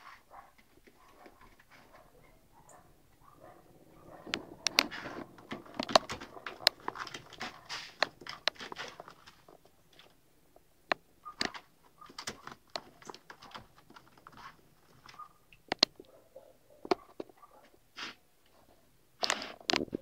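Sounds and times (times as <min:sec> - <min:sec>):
dog claws clicking and tapping: 0:04.0 - 0:10.1, 0:10.9 - 0:16.1.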